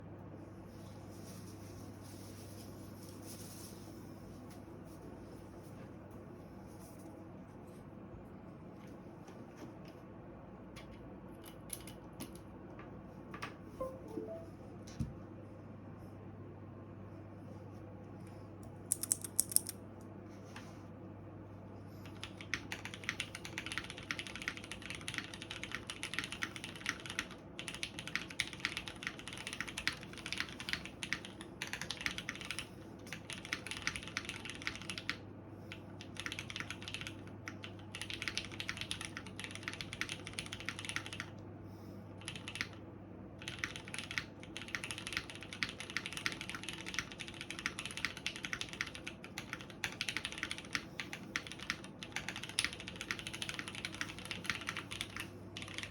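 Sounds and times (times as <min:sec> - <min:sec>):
mechanical keyboard typing: 0:11.4 - 0:12.5, 0:18.9 - 0:19.8, 0:22.0 - 0:41.4, 0:42.2 - 0:42.8, 0:43.4 - 0:55.9.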